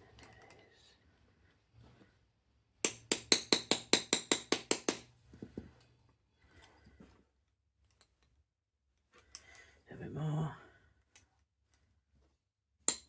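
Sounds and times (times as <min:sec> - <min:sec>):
hammer rapping a pin punch: 0:02.8 - 0:05.1.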